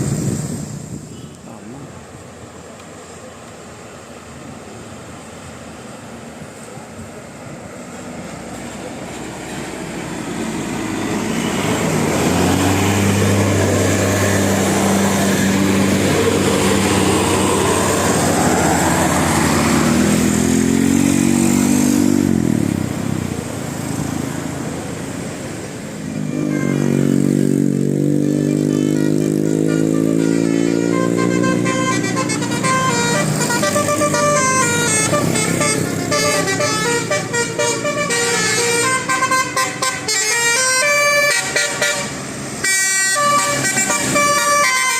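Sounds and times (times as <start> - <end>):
bus engines passing: 0.0 - 44.9
multi-tone bus horn notes: 26.1 - 27.6, 28.2 - 44.9.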